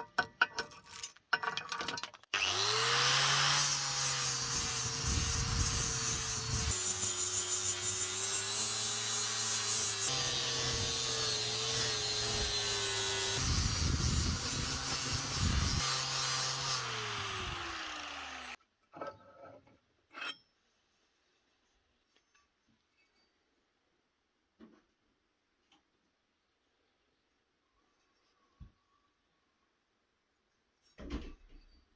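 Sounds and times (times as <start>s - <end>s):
power tool grinding: 2.3s - 18.6s.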